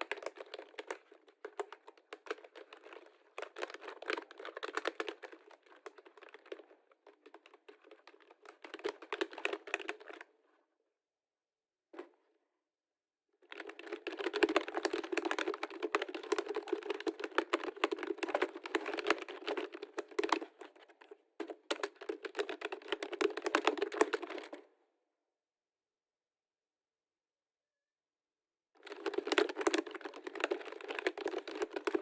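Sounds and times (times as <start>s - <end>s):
keyboard typing: 28.9s - 32.0s.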